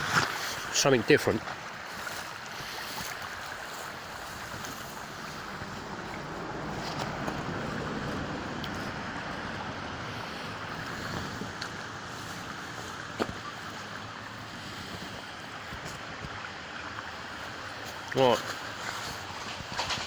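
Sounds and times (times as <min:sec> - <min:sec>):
stream flowing over rocks: 0:00.0 - 0:20.0.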